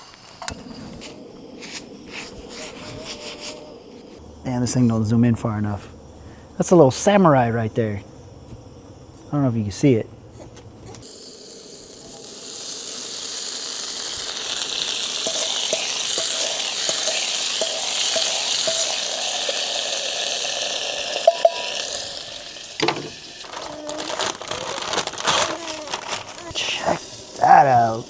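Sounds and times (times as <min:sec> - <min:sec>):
meat sizzling on a griddle: 0:11.0 - 0:24.8, 0:26.4 - 0:28.0.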